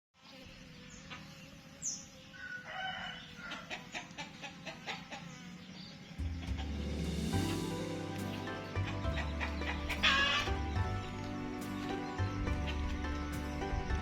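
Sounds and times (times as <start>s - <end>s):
chickens clucking: 2.4s - 14.0s
music with heavy low beat: 6.3s - 14.0s
high chirp: 6.4s - 14.0s.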